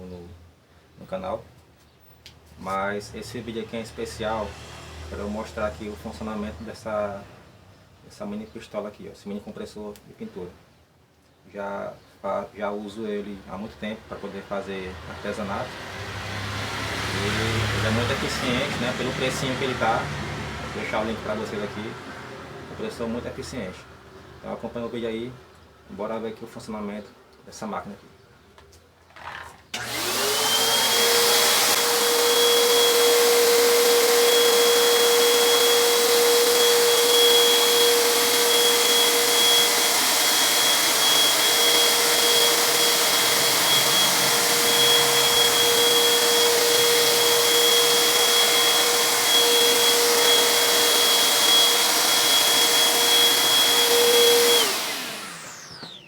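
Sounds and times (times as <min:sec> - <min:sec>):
compressor motor running: 0:15.7 - 0:21.8, 0:29.7 - 0:56.0.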